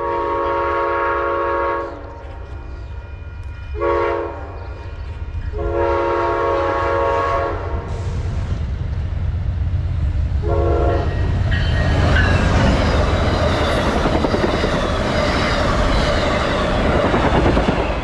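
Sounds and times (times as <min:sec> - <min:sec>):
locomotive air horn blasts: 0:00.0 - 0:02.2, 0:03.8 - 0:04.6, 0:05.5 - 0:08.0, 0:10.4 - 0:11.4
train rumble: 0:00.0 - 0:18.0.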